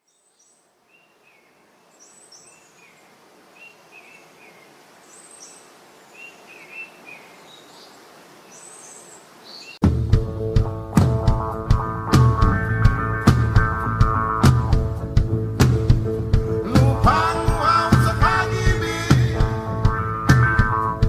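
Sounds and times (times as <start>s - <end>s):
birds chirping: 0.0s - 9.8s
soft steady hiss: 0.0s - 9.8s
loud rock music: 9.8s - 21.0s.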